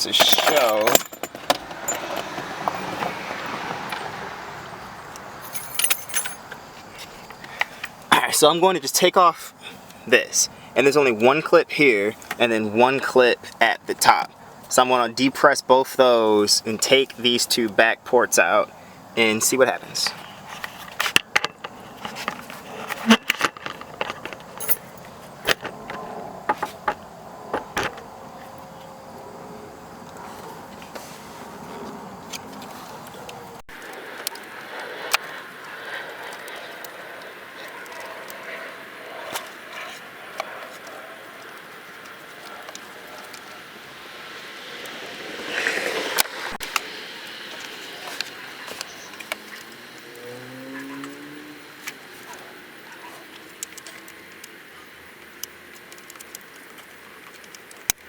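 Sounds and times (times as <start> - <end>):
scraping: 0.0 - 3.2
plastic clicks and rattles: 20.6 - 24.6.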